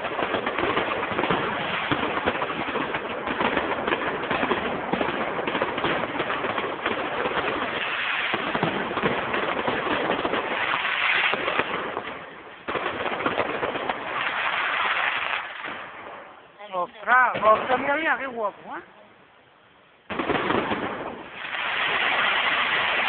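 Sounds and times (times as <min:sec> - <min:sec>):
fireworks crackling: 0:00.0 - 0:19.3, 0:20.0 - 0:23.0.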